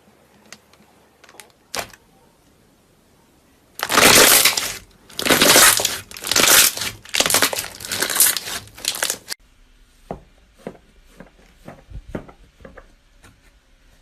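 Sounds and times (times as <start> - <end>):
slime squeezed by hand crackling: 3.8 - 9.4.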